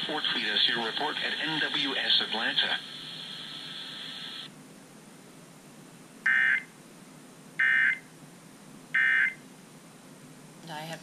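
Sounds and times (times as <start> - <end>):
faint hiss: 0.0 - 4.5.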